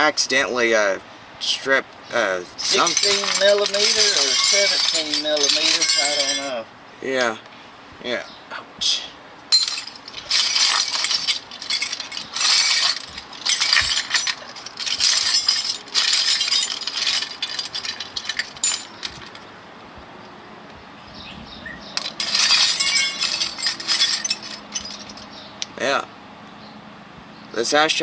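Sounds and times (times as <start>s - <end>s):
metal tools clinking and rattling: 2.5s - 6.6s, 9.5s - 19.5s, 22.0s - 25.4s.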